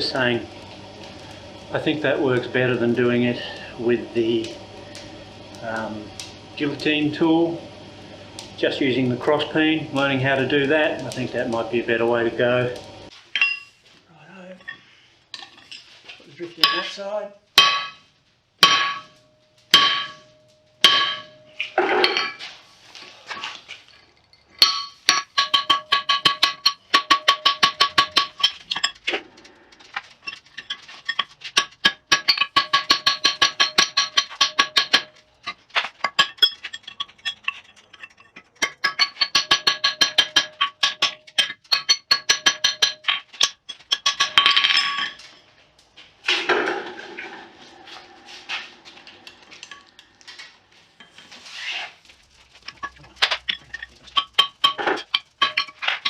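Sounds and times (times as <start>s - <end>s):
hammer striking steel on anvil: 16.6s - 17.0s, 17.6s - 22.4s, 24.6s - 28.9s, 31.1s - 35.2s, 38.6s - 45.2s, 53.5s - 56.0s.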